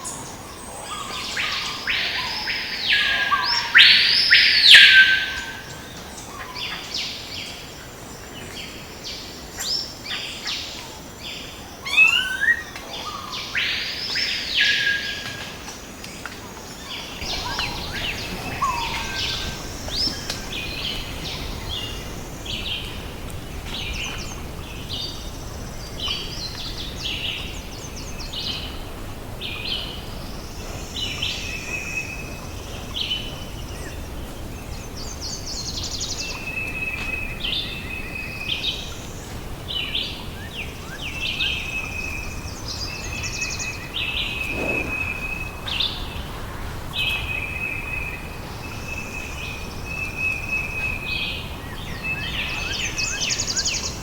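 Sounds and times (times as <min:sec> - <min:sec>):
birds chirping: 0:16.8 - 0:28.8, 0:40.4 - 0:46.3
birds calling rising and falling: 0:17.2 - 0:22.8.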